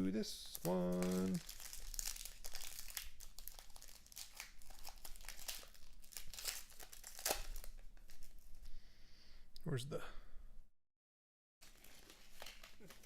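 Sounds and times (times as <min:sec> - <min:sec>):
plastic wrapper crinkling: 0:00.4 - 0:08.7, 0:11.6 - 0:13.0
wrapper tearing sharply: 0:00.6 - 0:08.3.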